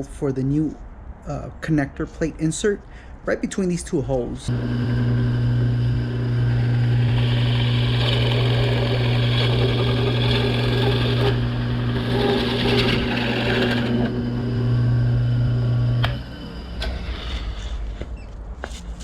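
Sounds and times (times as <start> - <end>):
power drill boring through wood: 4.5 - 16.9.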